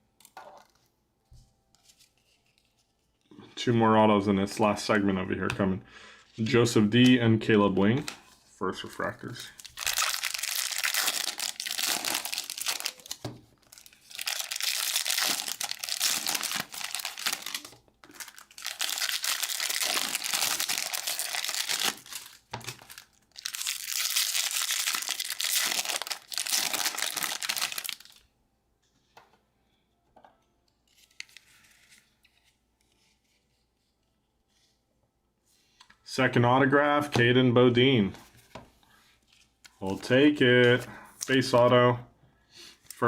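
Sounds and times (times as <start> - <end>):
card pack wrappers crinkling: 8.8 - 28.3.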